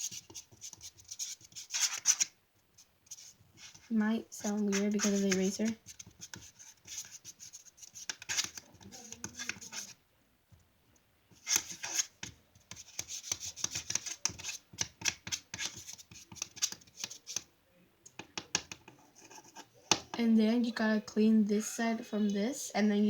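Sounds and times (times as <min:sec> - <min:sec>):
pencil scraping in container: 0:00.0 - 0:02.3, 0:03.1 - 0:09.9.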